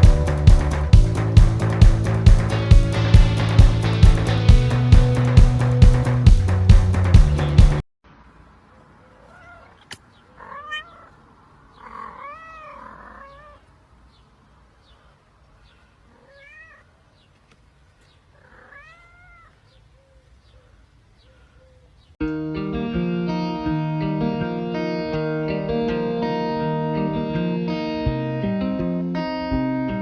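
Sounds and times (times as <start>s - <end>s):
music: 0.0s - 7.8s, 22.2s - 30.0s
cat meowing: 9.2s - 11.2s, 11.8s - 13.7s, 16.1s - 17.0s, 18.4s - 19.6s.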